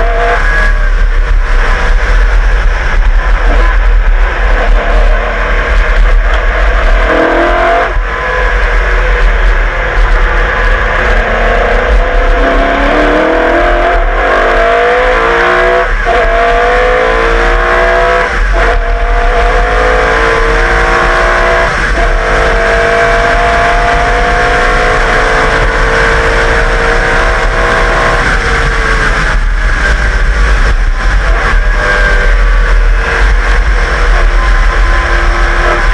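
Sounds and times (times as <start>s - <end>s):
race car accelerating with upshifts: 0.0s - 35.9s.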